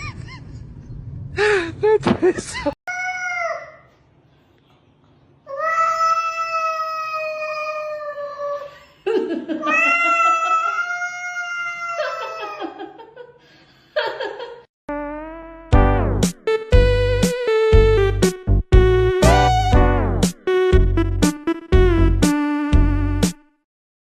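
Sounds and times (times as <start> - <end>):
cat yowling: 9.7 - 12.4.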